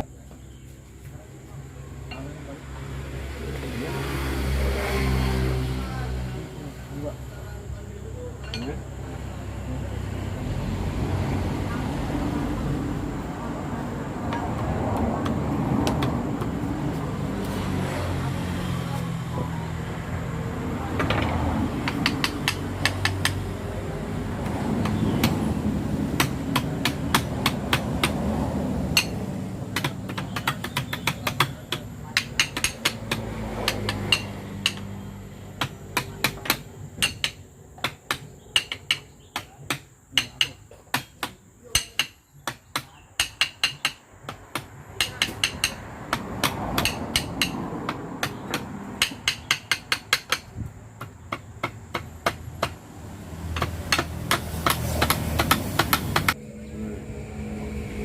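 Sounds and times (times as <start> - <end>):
hammer tapping metal: 8.4 - 8.8, 14.3 - 16.5, 21.0 - 23.4, 26.1 - 28.2, 28.9 - 35.0, 35.6 - 52.8, 53.5 - 56.4.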